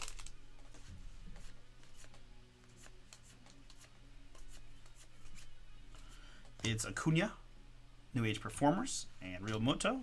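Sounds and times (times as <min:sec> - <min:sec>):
trading cards flipped by hand: 0:00.0 - 0:06.8.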